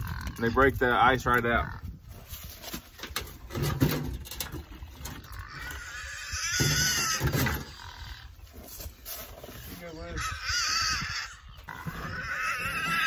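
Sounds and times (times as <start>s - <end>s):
animal calling: 9.6s - 13.0s.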